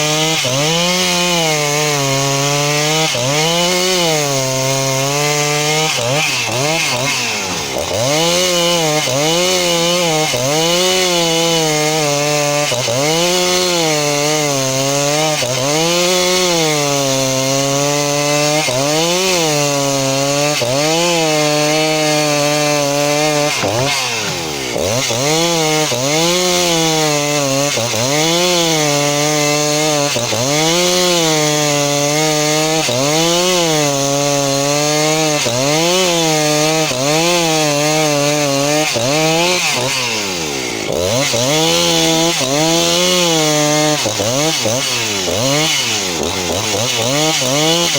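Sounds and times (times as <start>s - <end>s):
chainsaw cutting through log: 0.0s - 47.9s.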